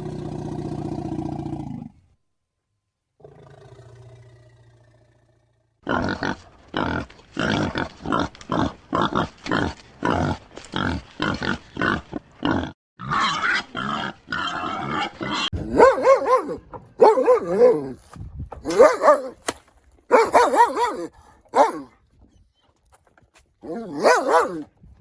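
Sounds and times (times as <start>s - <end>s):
pig grunting: 5.8s - 17.9s, 20.1s - 21.9s.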